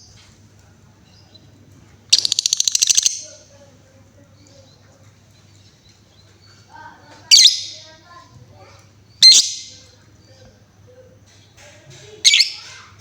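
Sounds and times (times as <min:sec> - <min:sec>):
soft bird chirps: 0:01.0 - 0:08.2, 0:09.1 - 0:10.6, 0:12.2 - 0:12.8
bird chattering trill: 0:02.1 - 0:03.4, 0:07.3 - 0:08.0, 0:09.2 - 0:09.8, 0:12.2 - 0:12.8.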